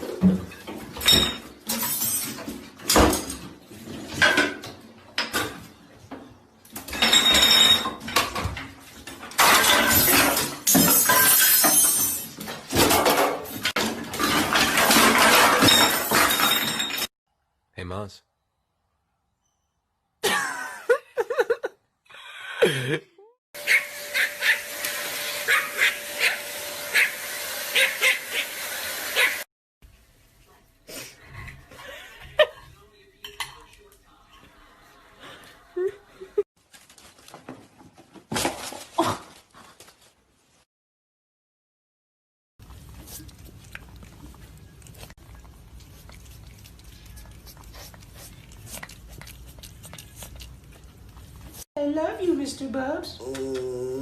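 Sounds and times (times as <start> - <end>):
dog yipping: 23.6 - 24.7, 25.4 - 29.4
pet chewing: 42.6 - 51.6.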